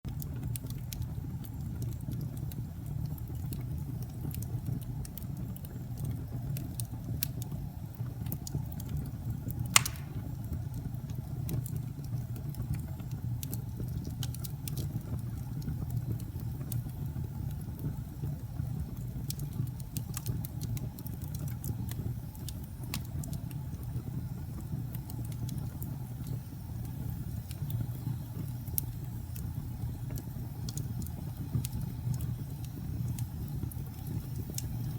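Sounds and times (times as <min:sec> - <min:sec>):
fire crackling: 0:00.1 - 0:34.9
low rumble of flames: 0:00.1 - 0:34.9
sharp loud pop from fire: 0:09.7 - 0:10.4.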